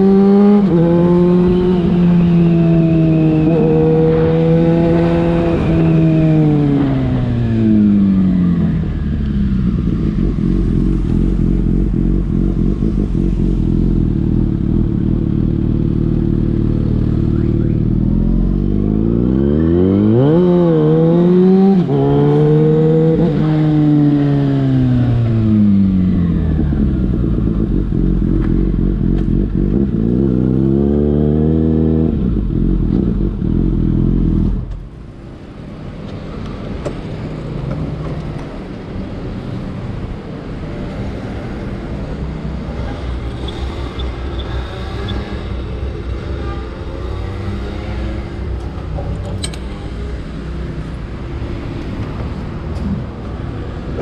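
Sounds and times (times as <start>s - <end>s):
motorcycle engine revving: 0.0s - 34.7s.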